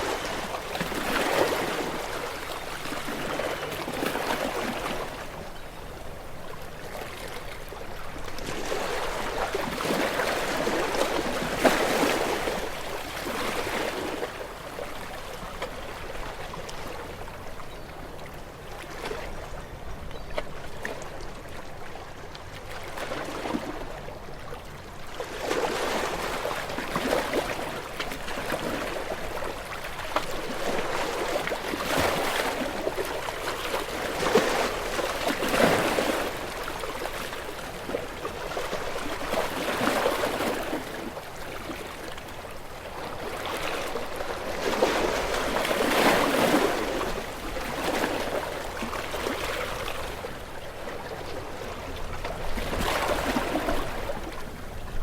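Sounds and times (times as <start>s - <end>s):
ocean waves breaking: 0.0s - 17.5s, 25.2s - 55.0s.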